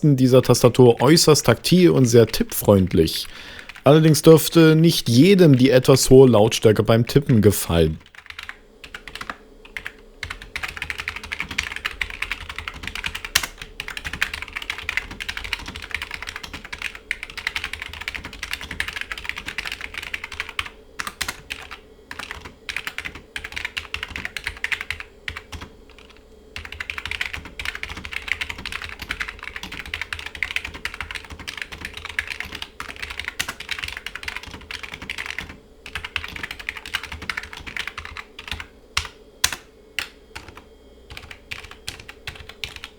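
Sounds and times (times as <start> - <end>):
faint steady hum: 0.0 - 42.9
keyboard typing: 0.2 - 42.9.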